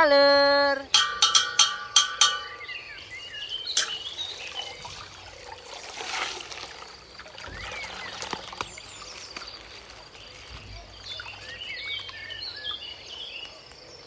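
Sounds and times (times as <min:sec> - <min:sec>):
water trickling and pouring: 0:02.3 - 0:12.8.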